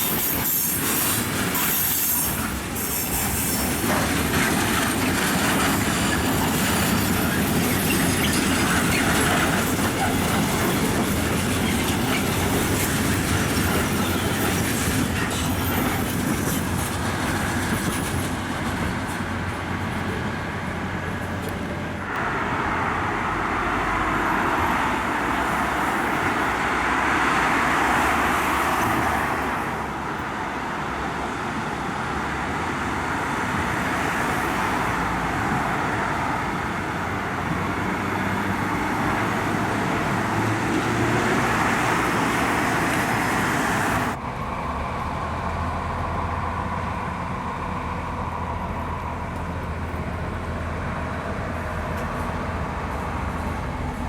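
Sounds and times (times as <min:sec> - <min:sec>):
train engine low hum: 0:00.0 - 0:54.0
loud rushing noise: 0:22.0 - 0:30.1.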